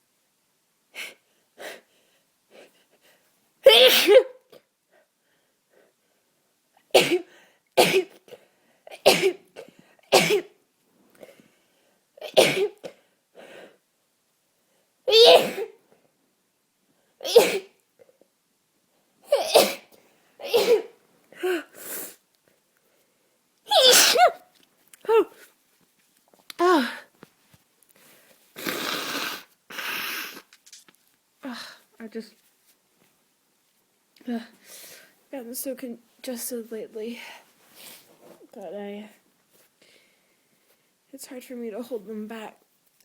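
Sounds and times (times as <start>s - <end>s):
person sneezing wetly: 3.6s - 4.5s, 6.9s - 8.3s, 9.0s - 10.5s, 12.2s - 13.0s, 15.1s - 15.8s, 17.2s - 17.8s, 19.3s - 22.2s, 23.7s - 25.5s, 28.6s - 30.5s.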